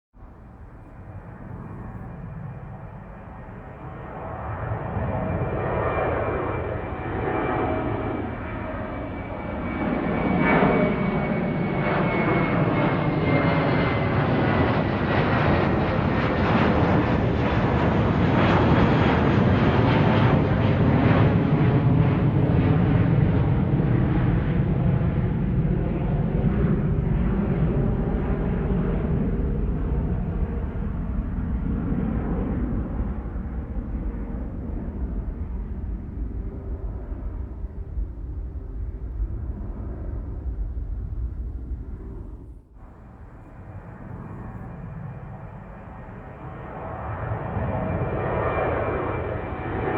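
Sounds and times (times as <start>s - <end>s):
jet engine rumble: 0.2s - 49.9s
jet engine whine: 0.2s - 49.9s.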